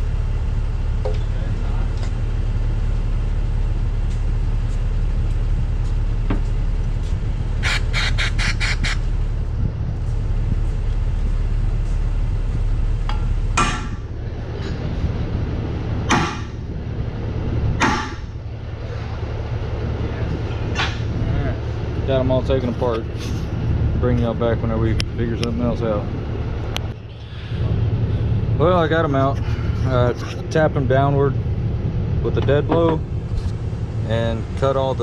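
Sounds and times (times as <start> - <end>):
steady low drone: 0.0 - 35.0
heavy knocks on metal: 13.1 - 14.1, 16.0 - 16.6, 17.8 - 18.3.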